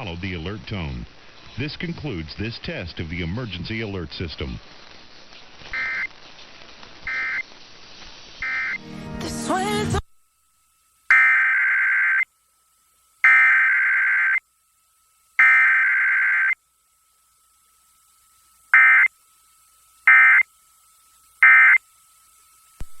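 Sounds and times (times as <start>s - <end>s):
raspy warbling digital data bursts: 3.1s - 6.4s, 7.0s - 8.8s, 11.1s - 12.3s, 13.2s - 14.5s, 15.3s - 16.6s, 17.6s - 20.6s, 21.3s - 21.9s.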